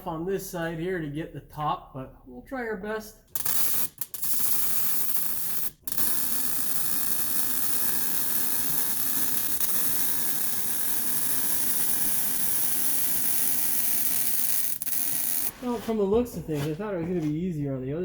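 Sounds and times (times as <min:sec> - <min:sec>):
welding arc crackling hiss: 0:03.3 - 0:15.5.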